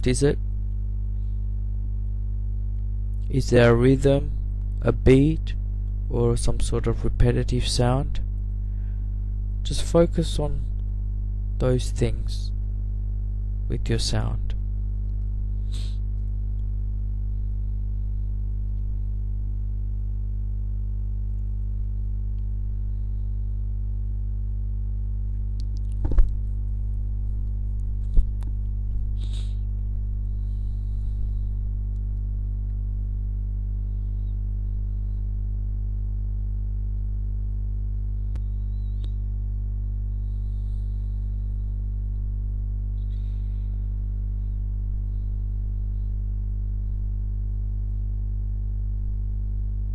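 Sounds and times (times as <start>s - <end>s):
steady low hum: 0.0s - 49.9s
faint high chirps: 38.4s - 39.2s.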